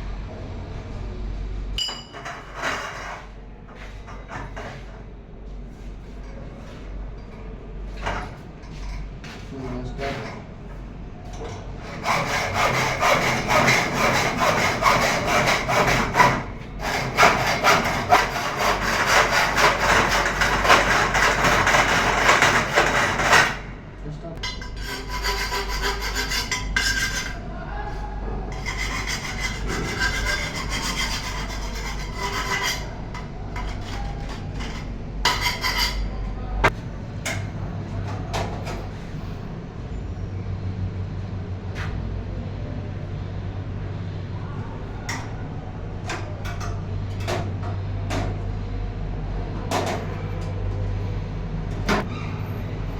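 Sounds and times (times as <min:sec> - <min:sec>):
harsh rasping tool scraping: 0:11.8 - 0:23.7, 0:24.4 - 0:27.4, 0:28.5 - 0:36.2.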